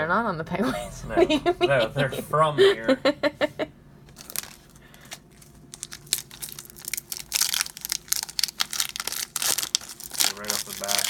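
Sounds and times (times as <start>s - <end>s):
foil wrapper crinkling and tearing: 4.2s - 11.0s.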